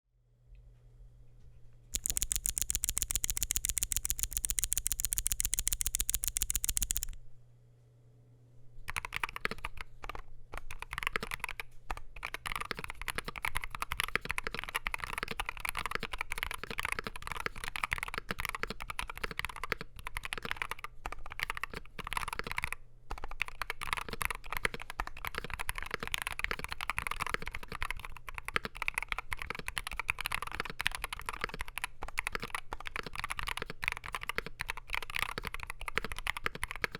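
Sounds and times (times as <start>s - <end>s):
fast run of sharp clicks: 2.0s - 7.2s
keyboard typing: 2.0s - 7.2s, 10.6s - 11.6s.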